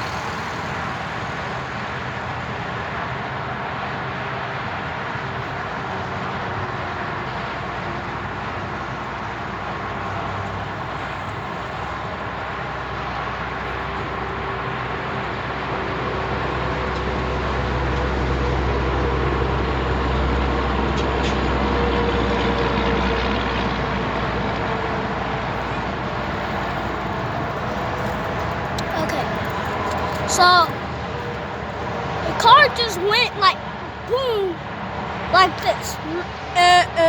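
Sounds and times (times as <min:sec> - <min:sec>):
road traffic noise: 0:00.0 - 0:37.0
car engine rumble: 0:25.6 - 0:33.2.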